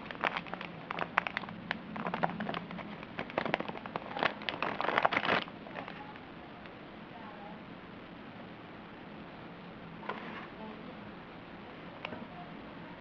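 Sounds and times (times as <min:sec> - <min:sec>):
plastic packaging crackling: 0:00.0 - 0:06.2.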